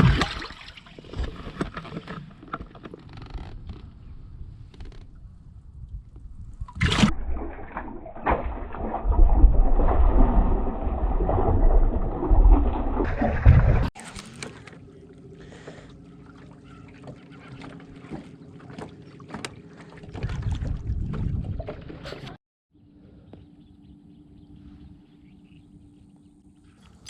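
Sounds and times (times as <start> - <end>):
boat engine rumble: 0.0 - 27.0
wind buffeting microphone: 20.0 - 22.2.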